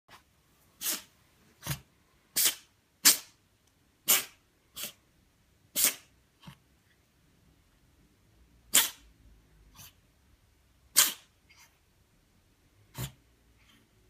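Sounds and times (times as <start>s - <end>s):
cat sneezing: 0.8s - 3.4s, 4.0s - 5.0s, 5.7s - 6.1s, 8.7s - 9.1s, 10.9s - 11.7s, 12.9s - 13.2s.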